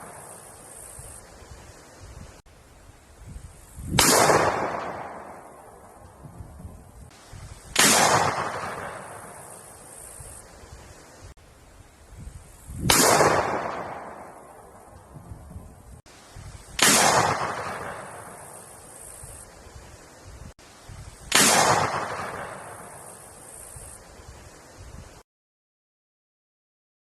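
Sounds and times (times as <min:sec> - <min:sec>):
gunshots with echo: 0:04.0 - 0:05.5, 0:07.8 - 0:09.6, 0:12.9 - 0:14.6, 0:16.8 - 0:18.6, 0:21.3 - 0:23.0.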